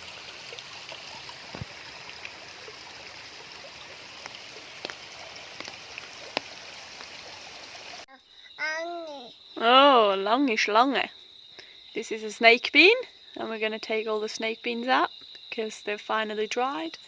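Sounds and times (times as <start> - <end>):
creek water rushing: 0.0 - 8.1.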